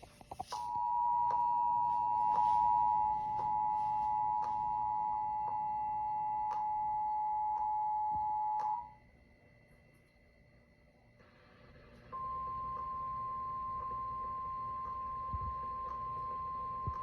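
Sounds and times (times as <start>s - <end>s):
two-tone attention signal: 0.6s - 9.0s.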